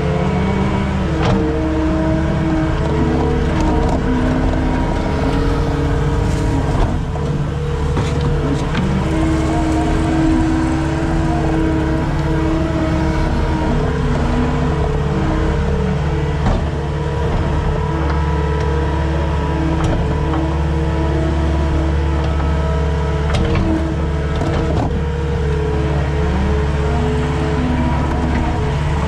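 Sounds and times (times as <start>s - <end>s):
skid steer engine running: 0.0s - 29.0s.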